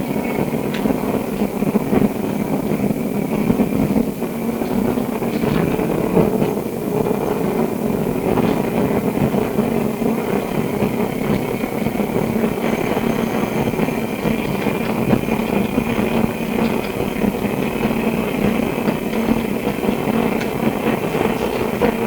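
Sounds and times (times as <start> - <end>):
tram running gear hum and rumble: 0.0 - 22.0.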